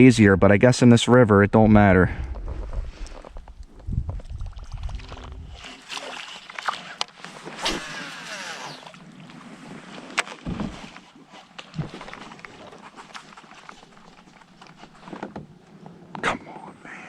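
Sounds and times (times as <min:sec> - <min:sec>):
water sloshing around kayak: 0:02.8 - 0:16.1.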